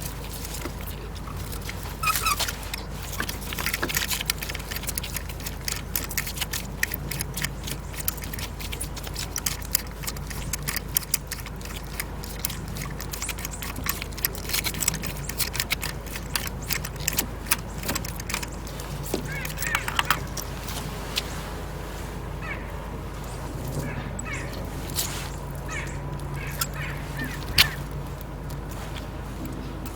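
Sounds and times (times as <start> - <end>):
metallic clicks of hand tools: 1.4 - 20.5, 26.3 - 27.8.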